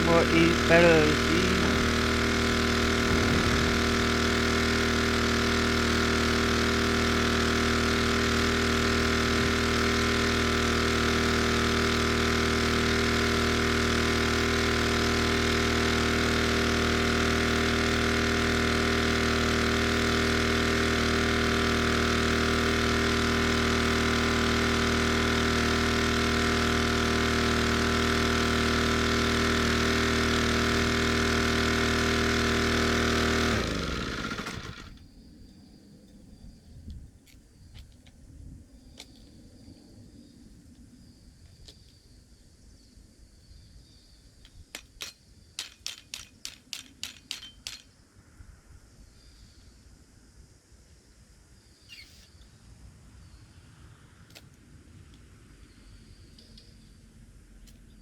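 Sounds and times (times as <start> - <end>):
pressure washer engine running: 0.0 - 35.0.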